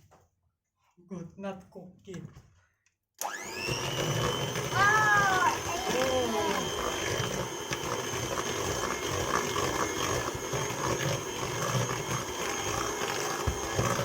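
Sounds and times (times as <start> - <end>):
electric mixer beating dough: 3.2 - 14.0.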